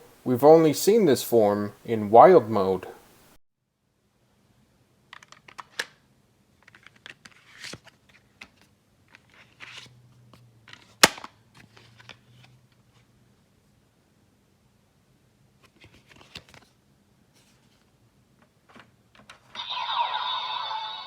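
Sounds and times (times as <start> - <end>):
cards rustling: 6.6 - 10.0, 10.7 - 13.0, 15.6 - 17.9
plastic snap: 11.0 - 11.3.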